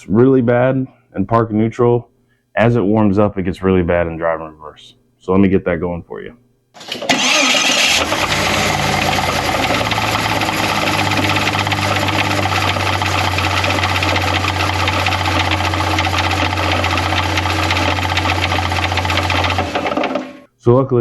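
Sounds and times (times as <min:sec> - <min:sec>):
car engine idling with knocking: 0:08.0 - 0:20.4.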